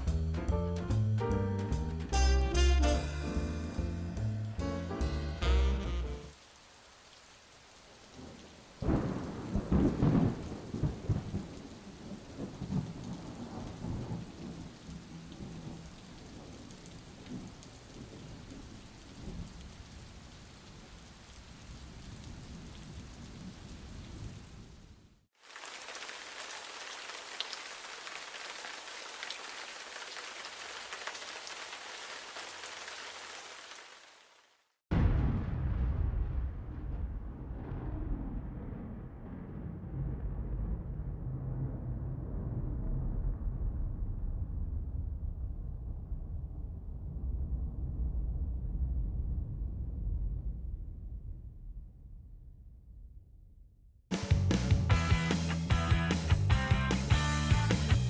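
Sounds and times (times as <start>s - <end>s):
rain: 5.4s - 48.5s
thunder rumbling: 8.0s - 21.0s, 34.9s - 52.2s.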